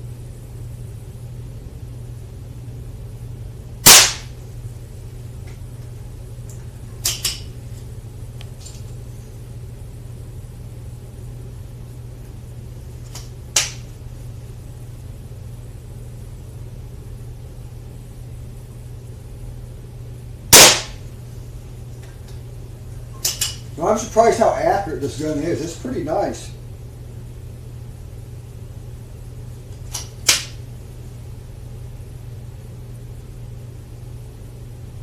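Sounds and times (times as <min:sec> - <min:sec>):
steady low hum: 0:00.0 - 0:35.0
air pistol firing crack: 0:03.8 - 0:04.4, 0:13.1 - 0:13.8, 0:20.5 - 0:21.0, 0:29.9 - 0:30.6.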